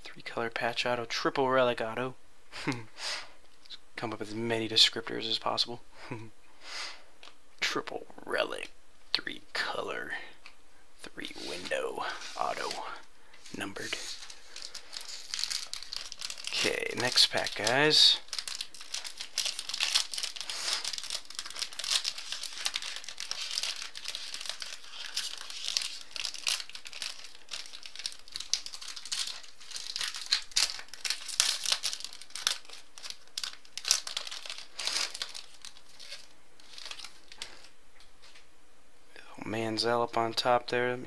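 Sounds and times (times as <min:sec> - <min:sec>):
wrapper crinkling and tearing: 0:11.6 - 0:37.8.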